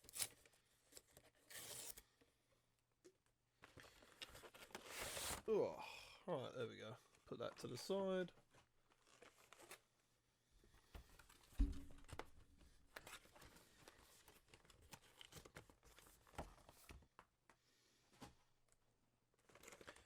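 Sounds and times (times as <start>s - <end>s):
soft thump: 11.6s - 12.1s.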